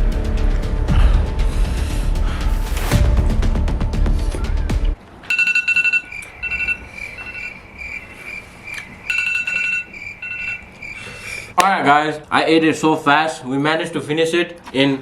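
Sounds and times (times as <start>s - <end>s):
background music: 0.0s - 5.0s
electronic timer alarm beeping: 5.3s - 11.1s.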